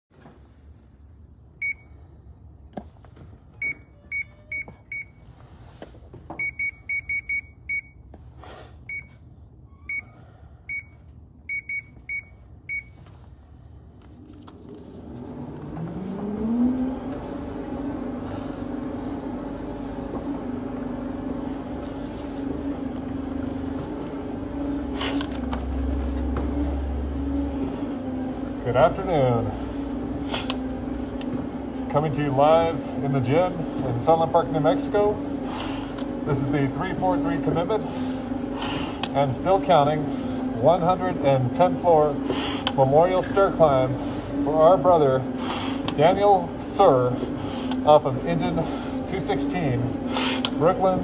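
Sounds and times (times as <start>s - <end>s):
machine motor humming: 14.5s - 51.0s.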